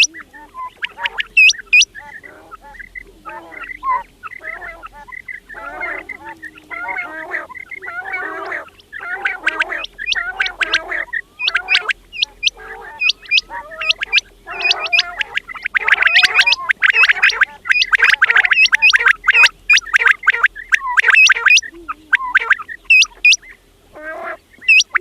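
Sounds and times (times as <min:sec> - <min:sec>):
rising whistled bird notes: 0:00.0 - 0:02.2, 0:09.7 - 0:19.9, 0:24.7 - 0:25.0
quails chattering: 0:00.0 - 0:25.0.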